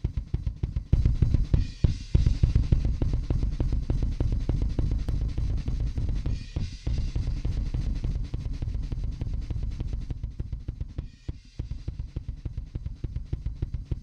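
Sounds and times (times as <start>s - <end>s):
rock drum kit playing: 0.0s - 11.0s
fast kick drum hits: 0.0s - 14.0s.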